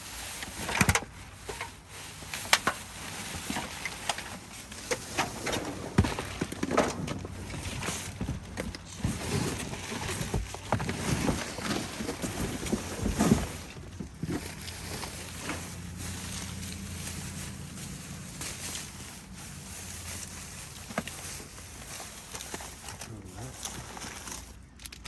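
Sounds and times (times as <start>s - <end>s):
plastic bags rustling: 0.0s - 24.8s
items knocking and clunking: 0.4s - 16.4s.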